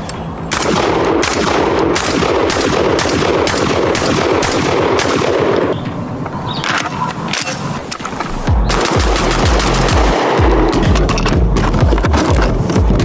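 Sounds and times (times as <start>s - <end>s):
shotgun shots: 0.5s - 5.8s, 8.3s - 13.0s.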